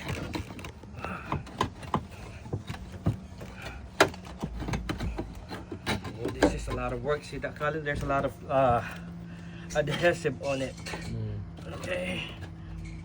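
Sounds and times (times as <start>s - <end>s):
roof tile being pried loose: 0.0s - 9.1s.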